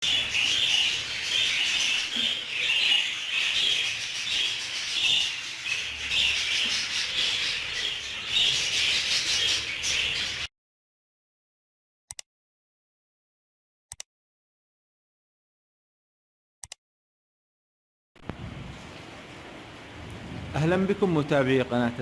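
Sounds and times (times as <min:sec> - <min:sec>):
budgerigars chattering: 0:00.0 - 0:10.5.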